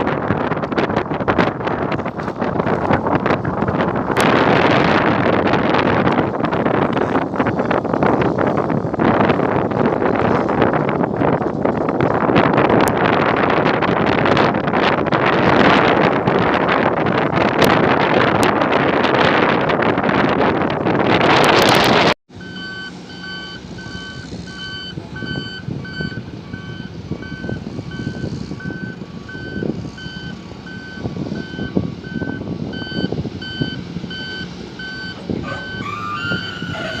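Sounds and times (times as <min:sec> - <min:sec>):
diesel engine running: 0:00.0 - 0:37.0
wind buffeting microphone: 0:00.0 - 0:37.0
reversing alarm beeping: 0:22.4 - 0:37.0
rising squeal: 0:22.4 - 0:37.0.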